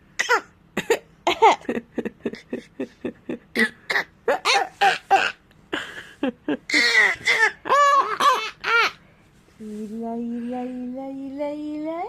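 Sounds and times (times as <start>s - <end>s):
breathy cough-like bursts: 3.6s - 9.0s
child laughing: 4.3s - 9.0s.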